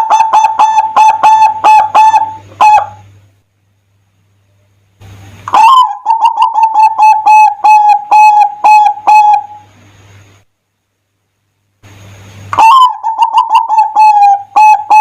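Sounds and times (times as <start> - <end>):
dove cooing: 0.0 - 3.1, 5.5 - 9.7, 12.6 - 15.0.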